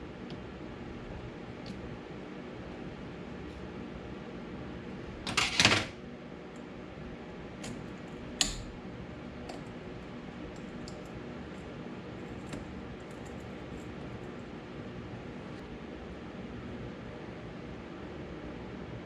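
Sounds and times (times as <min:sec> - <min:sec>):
steady hum: 0:00.0 - 0:19.0.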